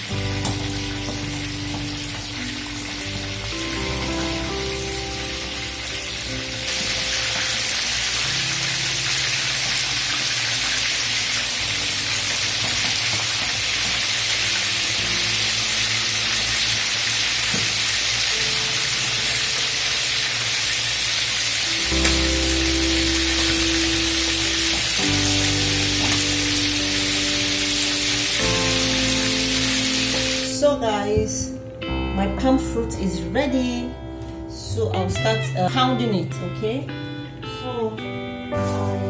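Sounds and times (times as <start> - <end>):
chicken sizzling in hot oil: 0.0 - 30.7
background music: 0.0 - 39.0.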